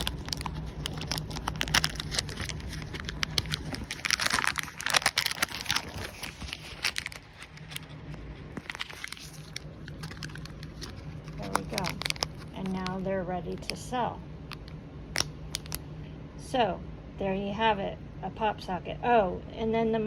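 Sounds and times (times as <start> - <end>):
plastic bags crinkling: 0.0 - 13.8, 14.5 - 15.8.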